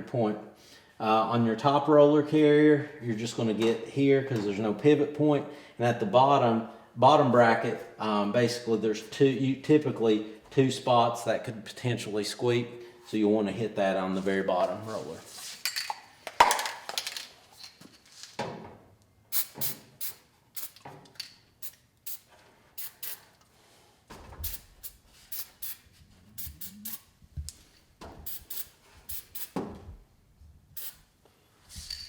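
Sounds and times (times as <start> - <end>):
aerosol spray bursts: 19.3 - 20.8, 21.6 - 23.4, 24.4 - 25.8, 26.4 - 27.1, 28.2 - 29.6, 30.8 - 31.0.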